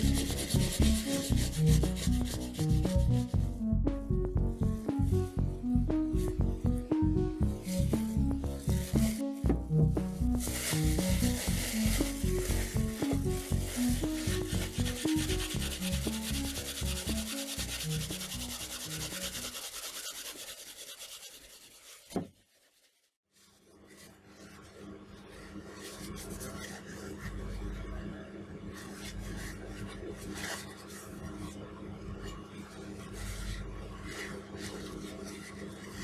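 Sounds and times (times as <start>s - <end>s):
steady low hum: 0.0s - 17.2s
background melody: 0.0s - 19.6s
abrasive rubbing: 0.0s - 20.6s.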